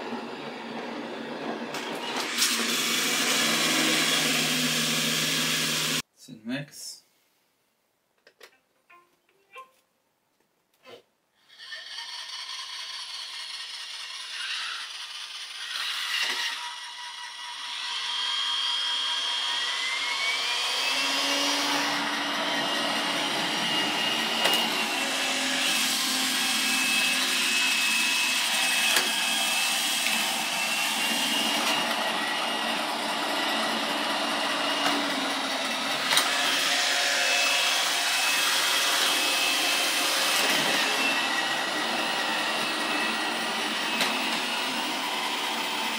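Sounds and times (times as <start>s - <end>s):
robot vacuum whine: 11.6s - 45.9s.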